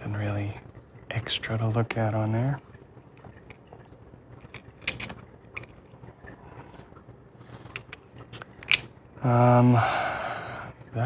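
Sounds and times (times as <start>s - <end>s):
small metal lock parts clicking: 4.5s - 5.7s, 7.7s - 8.9s.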